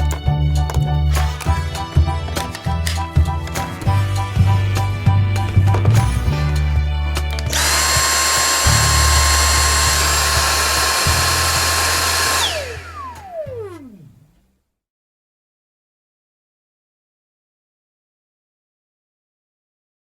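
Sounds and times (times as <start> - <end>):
background music: 0.0 - 14.2
handheld vacuum cleaner whine: 7.3 - 14.4.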